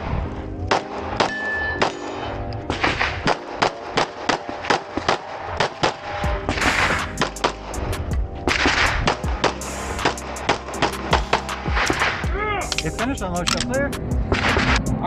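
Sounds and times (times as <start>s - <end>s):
handgun shots: 0.7s - 7.7s, 8.5s - 12.8s.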